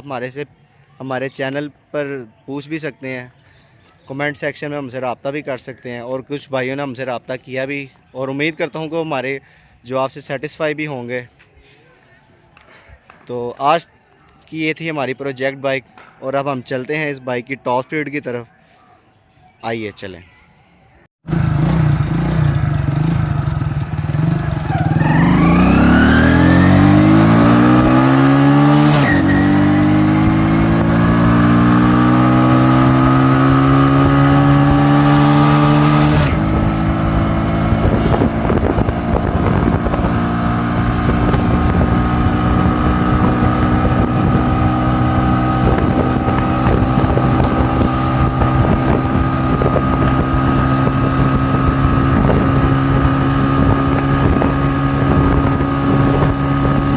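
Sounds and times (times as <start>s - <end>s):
motorcycle engine accelerating: 21.2s - 56.9s.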